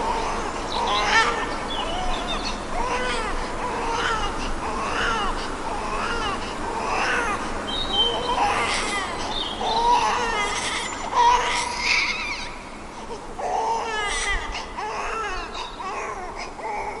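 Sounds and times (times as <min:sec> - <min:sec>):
infant crying: 0:02.8 - 0:07.4, 0:08.1 - 0:12.6, 0:13.4 - 0:17.0.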